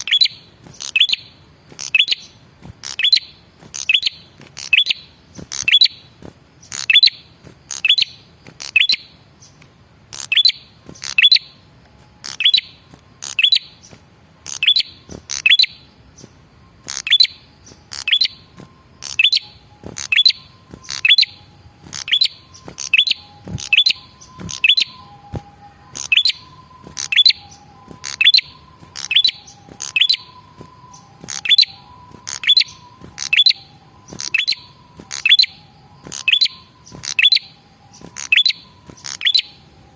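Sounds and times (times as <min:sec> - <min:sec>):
songbird chirping: 0:00.0 - 0:39.9
faint whistled notes: 0:14.7 - 0:39.9.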